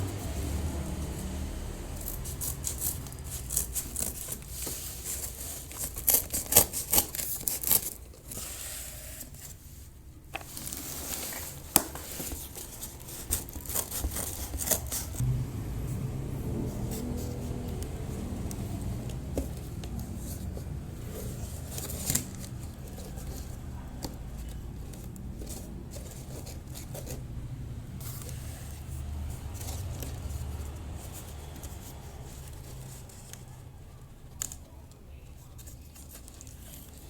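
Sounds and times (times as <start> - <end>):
cardboard scraping and tearing: 2.0 - 9.7, 10.4 - 15.2
steady low hum: 14.4 - 22.9.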